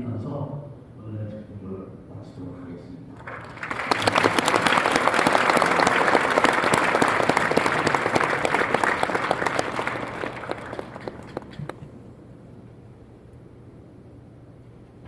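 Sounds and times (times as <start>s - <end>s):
audience applauding: 3.2s - 11.9s.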